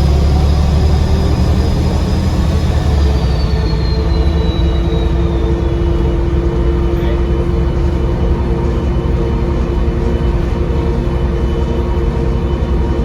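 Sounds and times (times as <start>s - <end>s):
turbocharger whistle: 0.0s - 7.0s
bus diesel engine drone: 0.0s - 13.0s.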